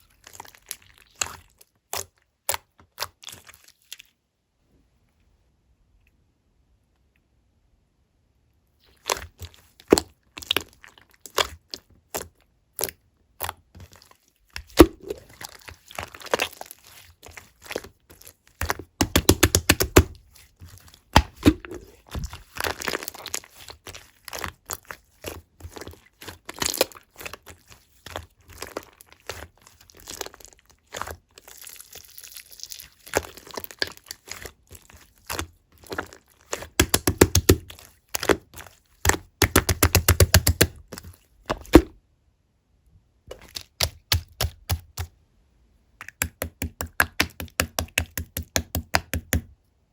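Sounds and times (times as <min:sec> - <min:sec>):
slime squishing and popping: 0:09.0 - 0:42.0, 0:43.3 - 0:45.1, 0:46.0 - 0:49.5.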